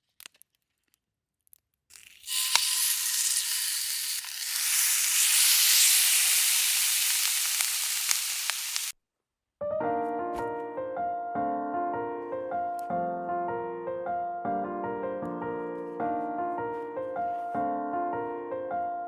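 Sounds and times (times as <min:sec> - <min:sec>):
meat sizzling in a frying pan: 0:01.9 - 0:08.9
sharp pops of frying: 0:01.9 - 0:08.9.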